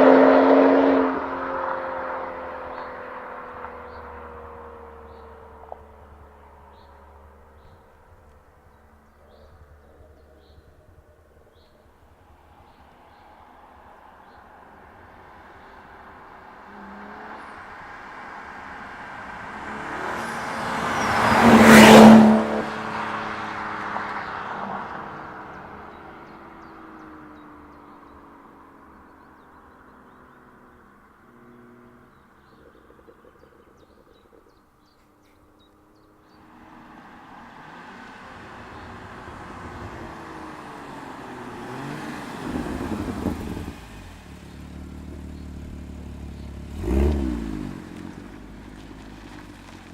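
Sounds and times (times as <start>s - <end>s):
car engine driving past: 14.0s - 29.2s, 36.3s - 49.9s.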